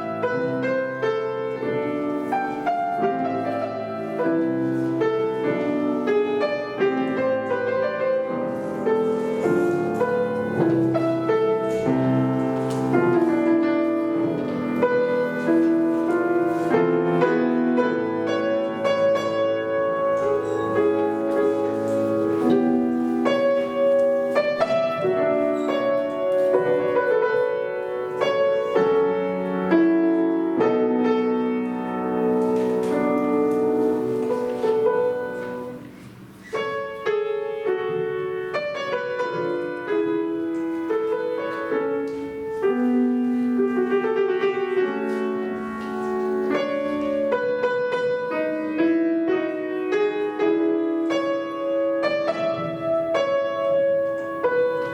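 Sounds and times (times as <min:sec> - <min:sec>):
piano duet: 0:00.0 - 0:54.9.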